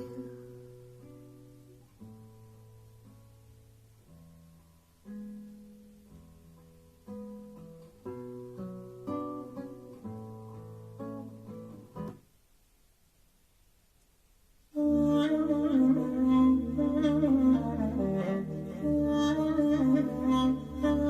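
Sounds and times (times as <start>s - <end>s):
strummed acoustic guitar: 0.0s - 12.2s
faint hiss: 0.0s - 21.0s.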